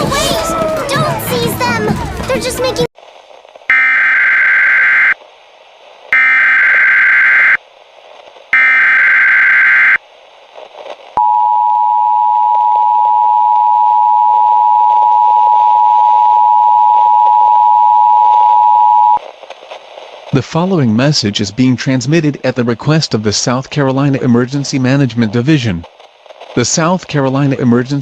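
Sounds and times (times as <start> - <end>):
buzzy data tones: 3.7 - 5.2, 6.1 - 7.6, 8.5 - 10.0
two-tone attention signal: 3.7 - 5.2, 6.2 - 7.6, 8.6 - 10.0.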